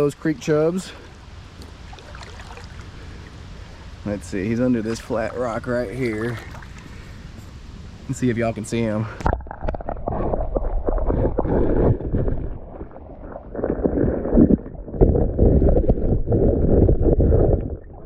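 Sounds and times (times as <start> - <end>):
knocks and gurgles: 9.2 - 18.0.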